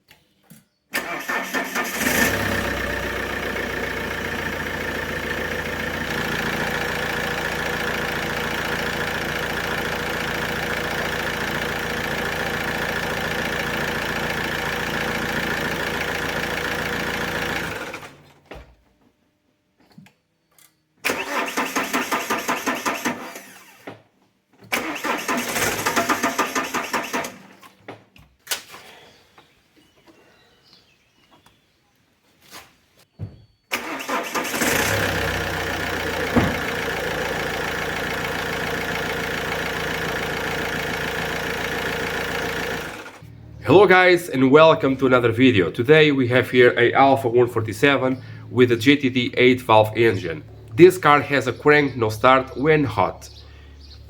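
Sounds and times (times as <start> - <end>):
engine cranking without starting: 1.0 - 18.4, 21.0 - 23.9, 24.7 - 27.8, 33.7 - 52.4
diesel engine running: 1.7 - 18.3, 33.8 - 54.0.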